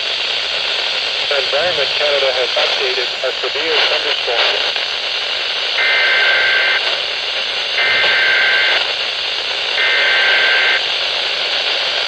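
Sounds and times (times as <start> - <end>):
radio static: 1.0 - 12.0
buzzing two-tone data signal: 5.8 - 7.0, 7.8 - 8.8, 9.8 - 10.8.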